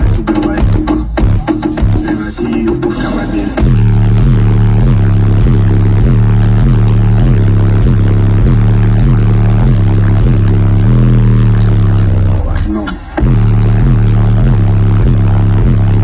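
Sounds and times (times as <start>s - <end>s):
bass-heavy music from subwoofers: 0.0s - 16.0s.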